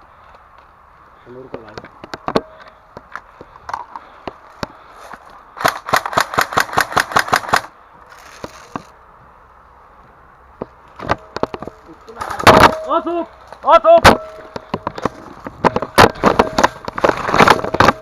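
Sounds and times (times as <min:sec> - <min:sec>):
airsoft guns firing: 0:05.6 - 0:07.7.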